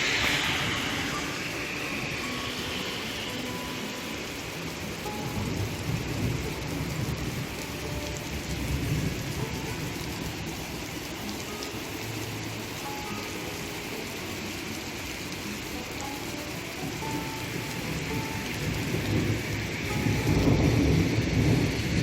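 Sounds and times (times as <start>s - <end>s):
low rumble: 0.0s - 5.0s
steady rain hiss: 0.0s - 22.0s.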